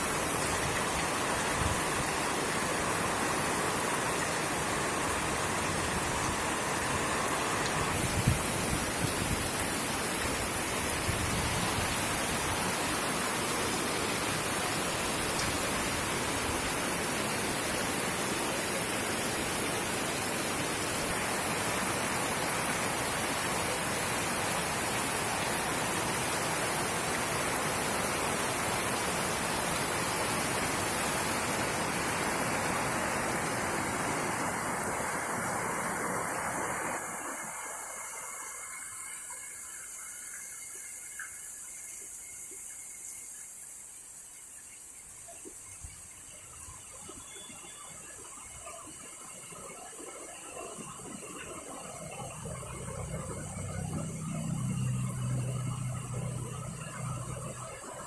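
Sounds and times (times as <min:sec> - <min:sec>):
heavy rain falling: 0:00.0 - 0:37.8.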